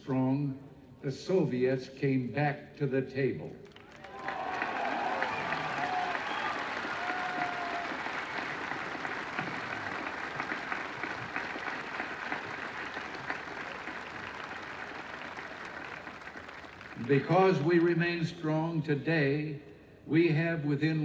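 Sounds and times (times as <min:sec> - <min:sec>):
crowd applauding: 0:03.6 - 0:18.2.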